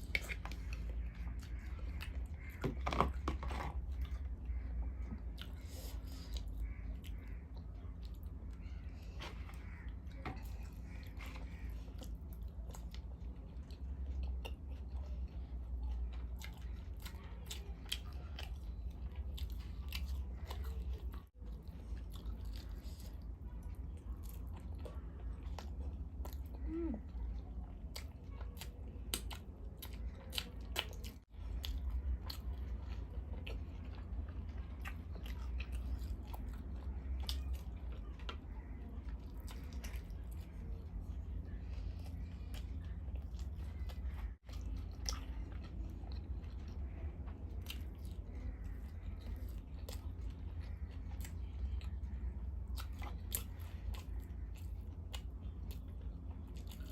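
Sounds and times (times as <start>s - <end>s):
close biting and chewing: 0.0s - 56.9s.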